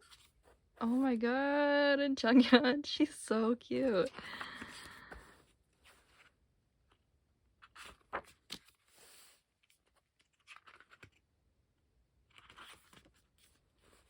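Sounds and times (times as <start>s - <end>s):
light clicks of pages turning: 0.0s - 0.6s, 3.8s - 11.3s, 12.2s - 14.0s
paper pages rustling: 0.0s - 1.0s, 3.8s - 7.0s, 7.6s - 11.2s, 12.2s - 14.0s.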